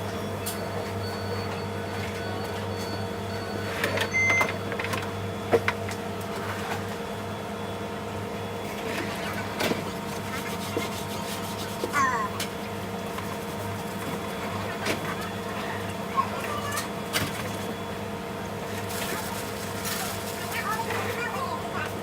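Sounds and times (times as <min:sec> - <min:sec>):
short beep: 0:00.4 - 0:04.6.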